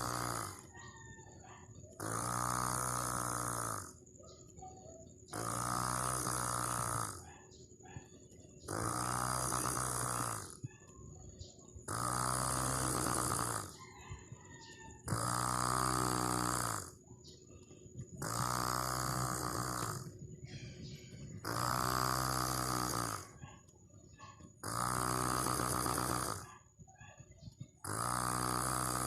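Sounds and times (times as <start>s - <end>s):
person snoring: 0.0s - 0.8s, 2.0s - 4.0s, 5.3s - 7.3s, 8.7s - 10.7s, 11.8s - 13.9s, 15.0s - 17.0s, 18.2s - 20.2s, 20.8s - 23.4s, 24.6s - 26.6s, 27.8s - 29.0s.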